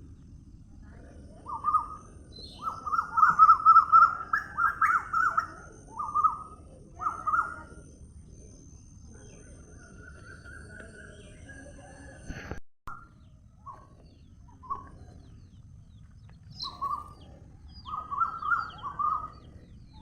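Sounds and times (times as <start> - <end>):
bird warbling chirps: 1.4 - 7.8, 16.4 - 20.0.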